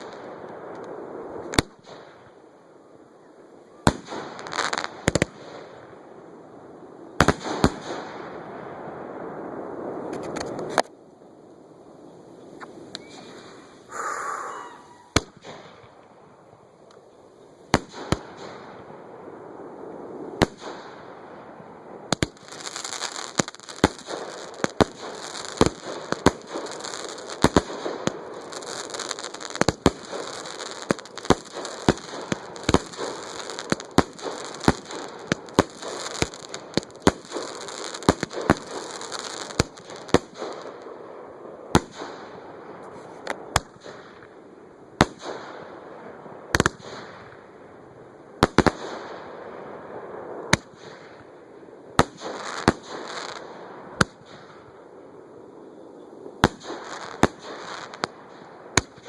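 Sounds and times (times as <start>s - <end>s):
fireworks crackling hiss: 0.0s - 59.0s
fireworks bangs: 3.8s - 6.1s, 6.9s - 10.9s, 12.4s - 16.1s, 17.7s - 44.4s, 45.0s - 59.0s.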